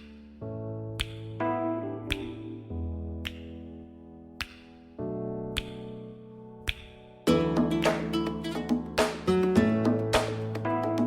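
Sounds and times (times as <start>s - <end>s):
acoustic guitar music: 7.3s - 11.0s.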